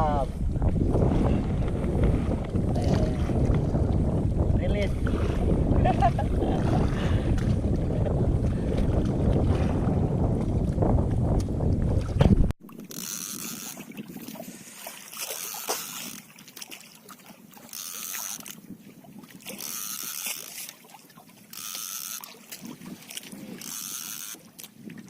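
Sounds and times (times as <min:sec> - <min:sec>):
fishing reel cranking: 0:12.8 - 0:14.0, 0:15.0 - 0:16.3, 0:17.6 - 0:18.6, 0:19.4 - 0:20.7, 0:21.5 - 0:22.5, 0:23.1 - 0:24.4.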